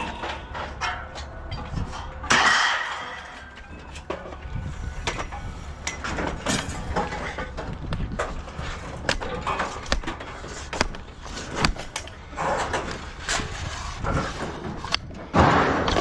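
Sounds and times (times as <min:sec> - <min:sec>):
metal scraping rattle: 0:00.0 - 0:16.0
scrap metal knocking and clanking: 0:00.0 - 0:16.0.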